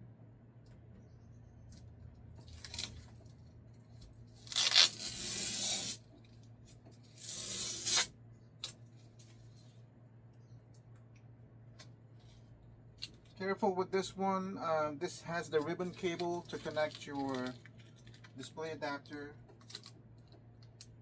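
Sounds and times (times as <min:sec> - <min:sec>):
packing tape peeling off: 0:04.4 - 0:06.0, 0:07.2 - 0:08.1.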